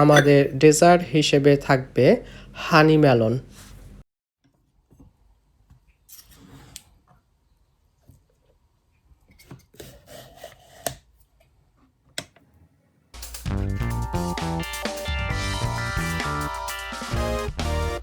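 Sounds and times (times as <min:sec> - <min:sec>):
utensils rubbing and scraping: 0:09.7 - 0:11.0.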